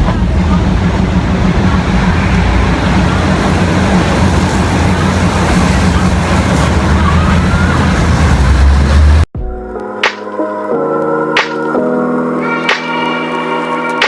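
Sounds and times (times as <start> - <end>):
low engine hum: 0.0 - 9.3
road or rail noise: 0.0 - 9.3
vehicle rumble: 0.0 - 9.3
wind: 0.0 - 9.3.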